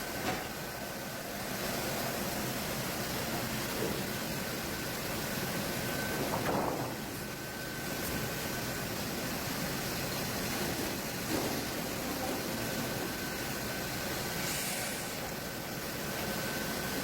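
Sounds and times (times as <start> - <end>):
sawmill machinery running: 0.0 - 17.0
short hiss: 14.4 - 15.2.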